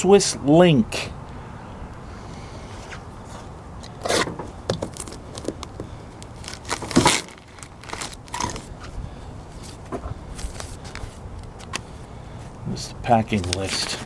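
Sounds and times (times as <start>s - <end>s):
packaging crinkling and tearing: 4.7s - 8.9s, 9.6s - 11.9s, 13.2s - 14.0s.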